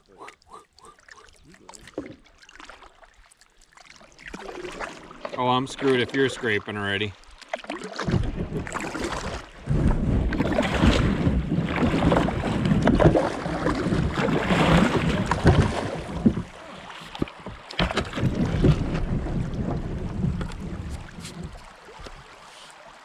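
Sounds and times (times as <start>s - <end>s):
kayak hull scraping on rocks: 7.8s - 22.8s.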